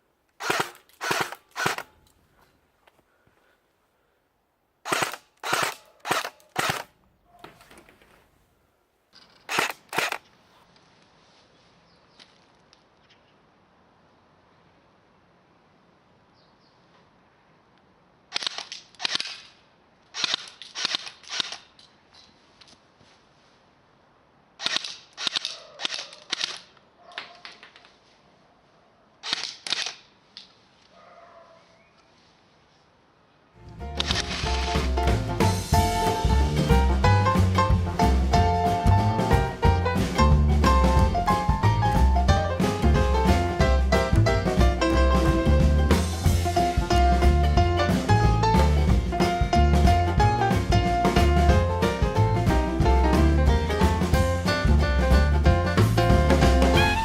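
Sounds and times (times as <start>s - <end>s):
airsoft gun firing: 0.4s - 1.9s, 4.9s - 6.9s.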